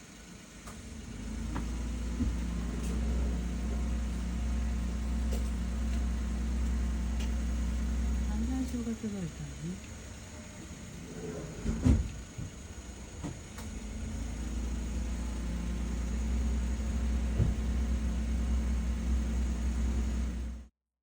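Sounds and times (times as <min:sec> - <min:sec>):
low steady rumble: 0:00.0 - 0:20.7
vehicle engine humming: 0:00.0 - 0:20.7
dull thump: 0:01.5 - 0:03.0, 0:17.2 - 0:18.1.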